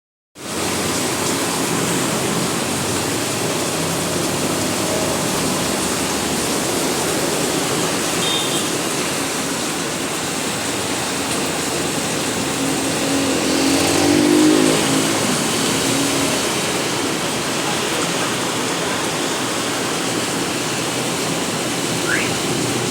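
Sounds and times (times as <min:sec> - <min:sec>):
heavy rain pouring: 0:00.4 - 0:22.9
engine-like tone: 0:22.0 - 0:22.6.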